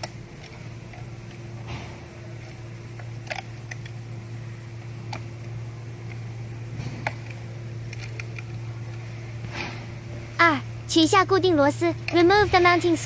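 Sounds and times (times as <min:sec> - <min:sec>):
steady low hum: 0:00.0 - 0:13.0
plastic parts clicking: 0:02.4 - 0:04.0, 0:06.8 - 0:09.0.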